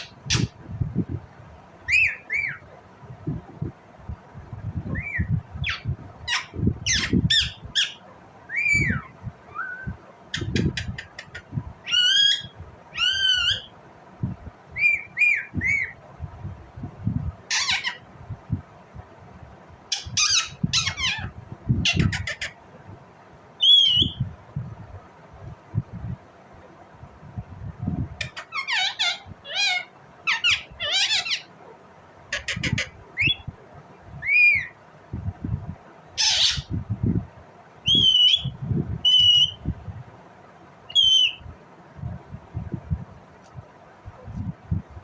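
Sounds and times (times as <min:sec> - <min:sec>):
parakeet squawking and chirping: 0:00.0 - 0:00.6, 0:01.9 - 0:02.6, 0:04.8 - 0:13.7, 0:14.8 - 0:16.0, 0:17.5 - 0:18.1, 0:19.9 - 0:22.6, 0:23.6 - 0:24.2, 0:28.2 - 0:31.5, 0:32.3 - 0:33.5, 0:34.2 - 0:34.8, 0:36.2 - 0:36.8, 0:37.9 - 0:39.6, 0:40.9 - 0:41.4.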